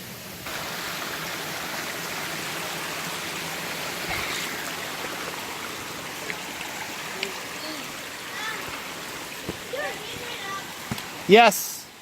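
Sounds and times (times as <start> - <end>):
stream water rushing: 0.0 - 12.0.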